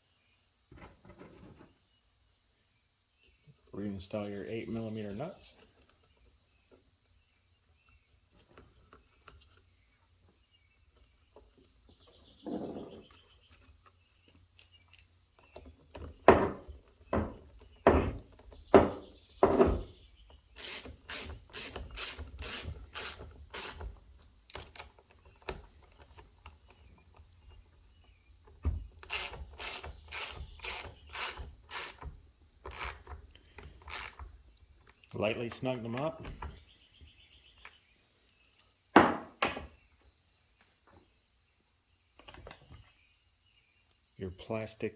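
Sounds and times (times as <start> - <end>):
ratchet wrench clicking: 20.6 - 23.9, 24.5 - 24.9, 29.0 - 33.2, 33.8 - 34.3.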